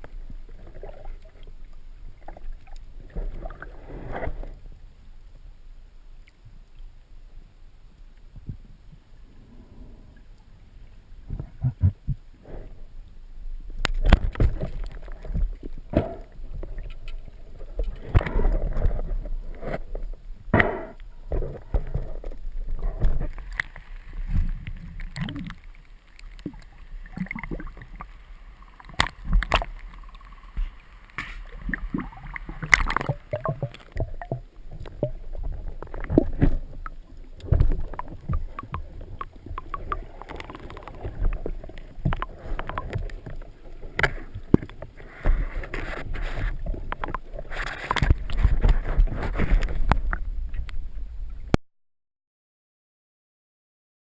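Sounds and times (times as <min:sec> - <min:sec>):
water sloshing and splashing: 0:00.0 - 0:04.7, 0:13.8 - 0:20.4, 0:21.0 - 0:51.4.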